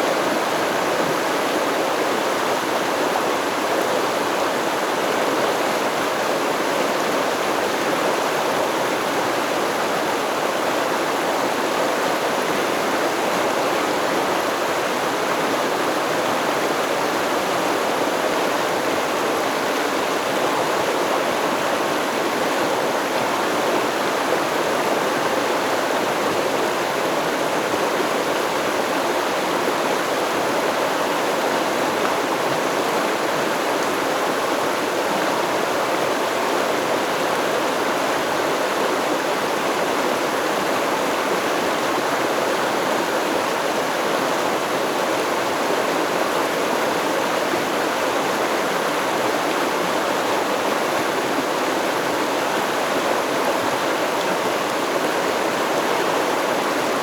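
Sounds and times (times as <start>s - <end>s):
stream water flowing: 0.0s - 57.0s.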